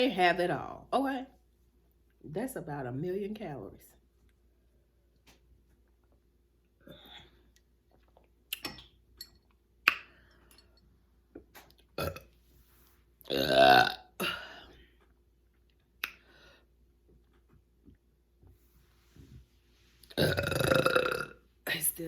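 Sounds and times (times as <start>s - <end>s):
person burping: 12.0s - 12.3s, 13.2s - 14.8s, 20.1s - 21.4s.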